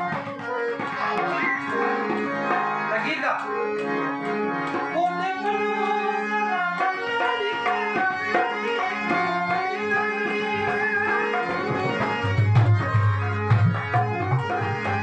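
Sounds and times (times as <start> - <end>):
keyboard held notes: 0.0 - 15.0
hand drum rhythm: 6.8 - 15.0.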